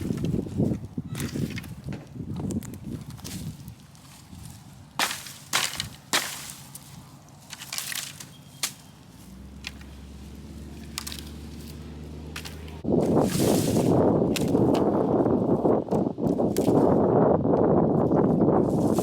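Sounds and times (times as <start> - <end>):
sticks snapping: 2.4 - 15.0, 15.9 - 16.9.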